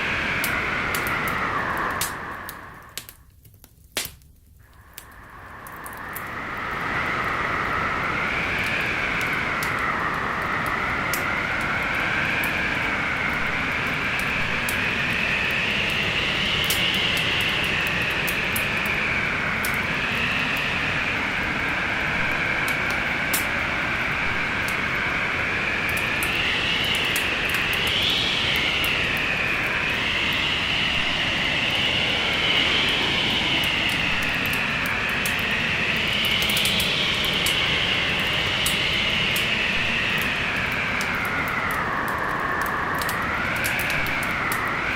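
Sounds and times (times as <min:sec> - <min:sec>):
whistling storm wind: 0:00.0 - 0:44.9
wood fire crackling and popping: 0:00.3 - 0:07.4, 0:21.4 - 0:29.7, 0:33.6 - 0:44.7.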